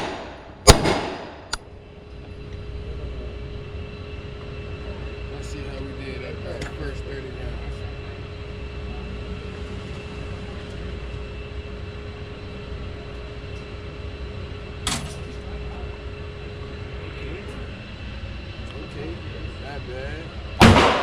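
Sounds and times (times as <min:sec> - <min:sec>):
low steady rumble: 0:00.0 - 0:21.0
target carrier motor humming: 0:00.0 - 0:21.0
sharp bang: 0:20.6 - 0:21.0.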